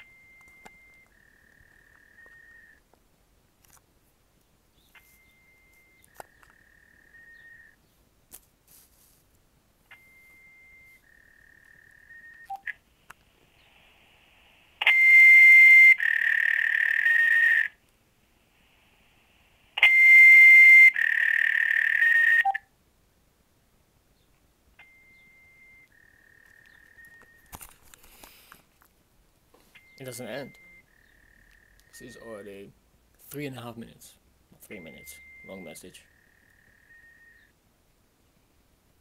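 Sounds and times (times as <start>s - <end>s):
electronic beep tones: 0.0s - 1.1s, 5.0s - 6.1s, 9.9s - 11.0s, 11.7s - 12.7s, 14.8s - 16.0s, 19.8s - 21.0s, 21.8s - 22.6s, 24.8s - 25.9s, 29.8s - 30.9s, 34.6s - 37.5s.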